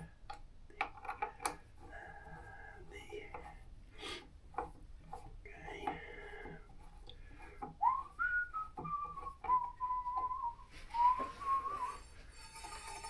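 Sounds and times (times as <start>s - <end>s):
light clicks and knocks: 0.0s - 1.9s, 4.5s - 7.8s
person whistling a tune: 7.8s - 12.0s.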